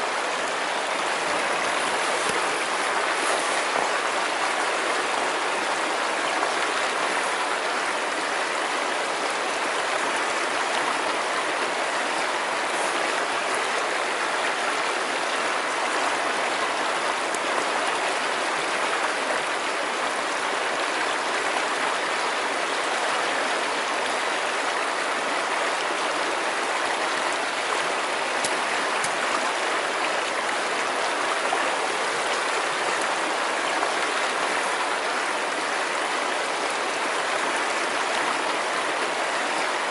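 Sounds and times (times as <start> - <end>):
river water rushing over stones: 0.0 - 39.9.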